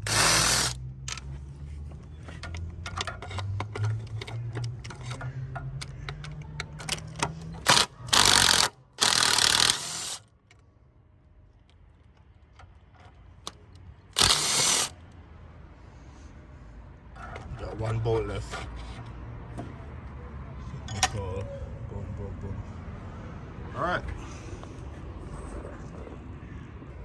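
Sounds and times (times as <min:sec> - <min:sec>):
ratchet clicking: 0:00.0 - 0:01.2, 0:02.4 - 0:10.3, 0:12.9 - 0:15.0.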